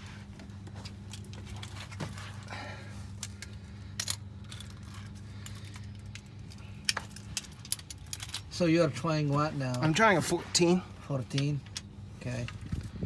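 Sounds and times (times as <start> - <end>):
steady low hum: 0.0 - 13.0
metal tools clinking: 3.2 - 10.1.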